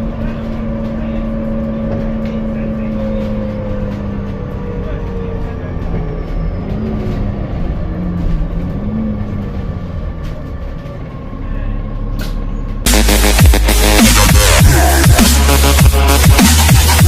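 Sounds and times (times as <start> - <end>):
bus idling with whine: 0.0 - 16.2
electronic dance music: 12.9 - 17.0.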